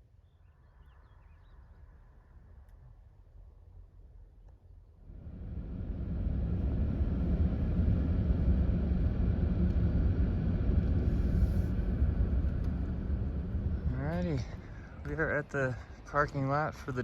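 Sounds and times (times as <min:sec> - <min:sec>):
car road and engine rumble: 0:05.0 - 0:17.0.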